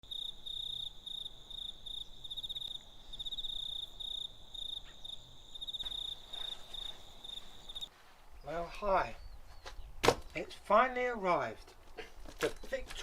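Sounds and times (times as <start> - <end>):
cricket chirping: 0.0 - 7.9.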